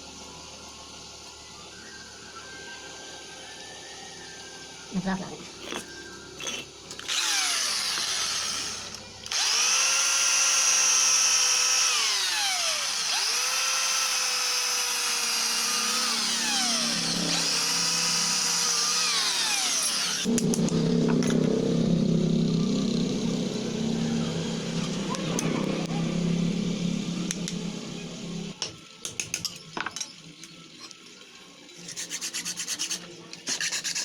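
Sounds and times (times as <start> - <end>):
power tool motor whining: 6.4 - 20.8
low steady machine hum: 20.3 - 28.6.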